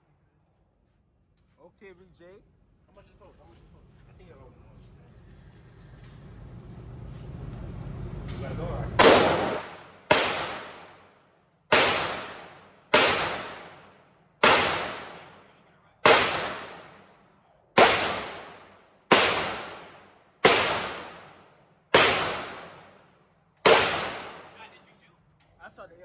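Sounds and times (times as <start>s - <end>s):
gunshots with echo: 9.0s - 11.1s, 11.7s - 17.2s, 17.8s - 23.0s, 23.6s - 24.8s.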